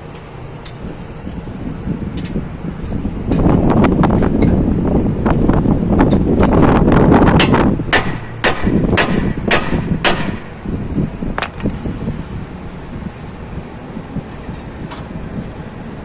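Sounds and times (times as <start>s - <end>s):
wind on microphone: 0.8s - 16.0s
sharp metallic knocks: 7.4s - 10.6s.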